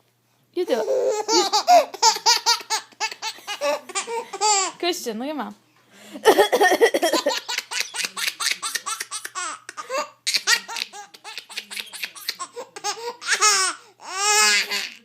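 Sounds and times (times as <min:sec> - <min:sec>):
baby laughing: 0:00.7 - 0:04.8, 0:06.2 - 0:15.0.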